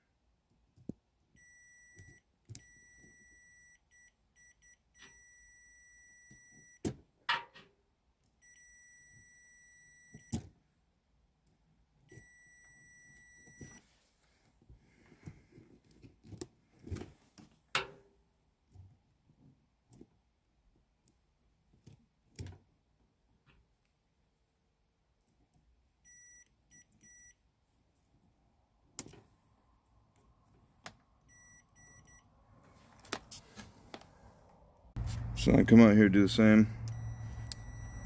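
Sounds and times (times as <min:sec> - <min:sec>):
multimeter continuity beeps: 0:01.4 - 0:06.8, 0:08.4 - 0:10.4, 0:12.1 - 0:13.8, 0:26.0 - 0:27.4, 0:31.2 - 0:32.3, 0:36.7 - 0:38.0.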